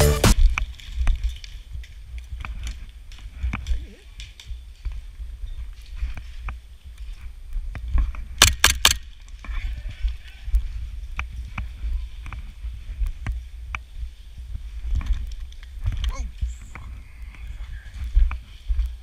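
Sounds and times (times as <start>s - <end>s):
footsteps: 0.0s - 19.0s
airsoft gunfire: 8.4s - 9.0s.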